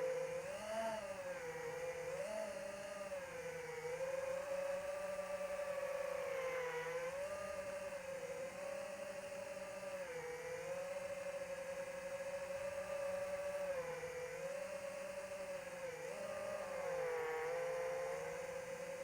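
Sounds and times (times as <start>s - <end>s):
model plane motor whining: 15.1s - 19.0s.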